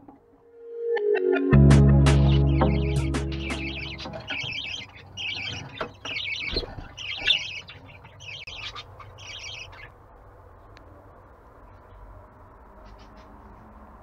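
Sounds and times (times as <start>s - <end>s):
budgerigars chirping: 2.1s - 10.0s.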